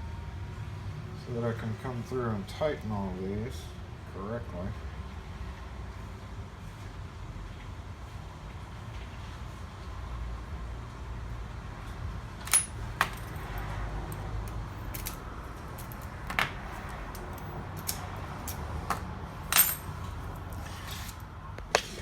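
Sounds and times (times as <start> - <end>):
small metal objects clinking: 12.4 - 18.6, 19.5 - 20.1.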